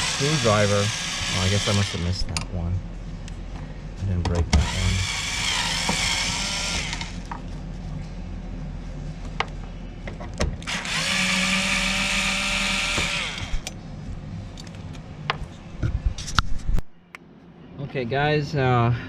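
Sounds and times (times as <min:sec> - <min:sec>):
electric screwdriver motor whining: 0:00.0 - 0:02.2, 0:04.6 - 0:07.2, 0:10.7 - 0:13.7.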